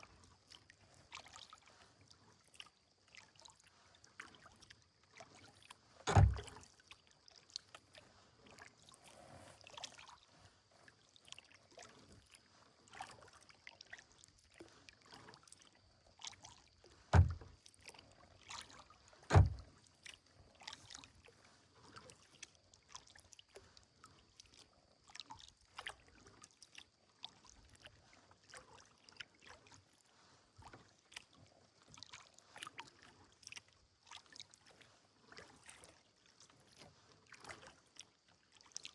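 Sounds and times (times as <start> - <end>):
paddle splashing and dripping: 0.1 - 38.9
loud deep thumps: 6.1 - 6.5, 17.2 - 17.5, 19.3 - 19.6
small knocks: 17.2 - 17.5.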